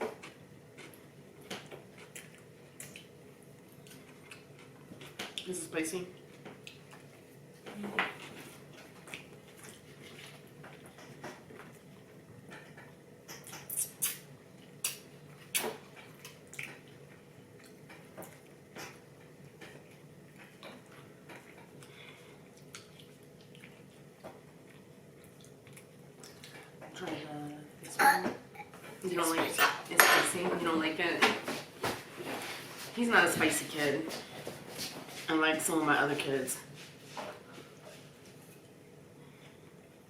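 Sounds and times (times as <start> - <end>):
soft chewing: 0.2 - 5.5, 6.1 - 27.7.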